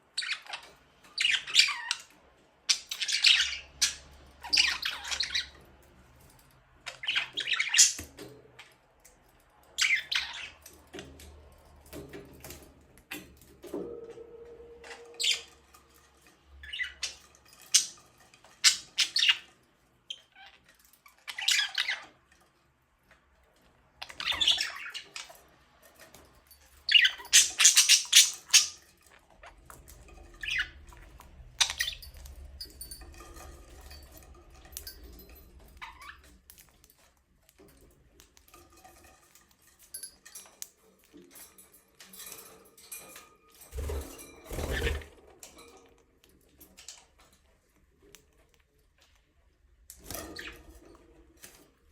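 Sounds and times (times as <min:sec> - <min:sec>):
budgerigars squawking and chirping: 0:02.7 - 0:05.5, 0:15.0 - 0:15.5, 0:26.9 - 0:28.8.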